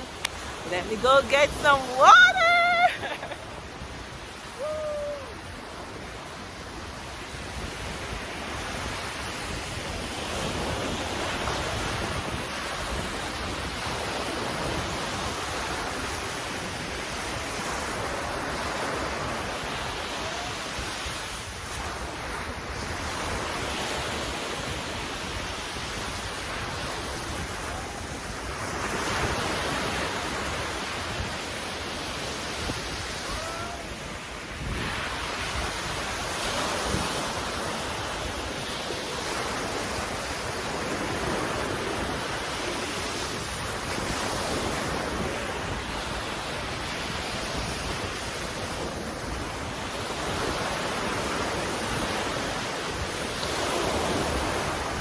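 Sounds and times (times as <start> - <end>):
sea waves breaking: 0.0 - 55.0
wind buffeting microphone: 0.0 - 55.0.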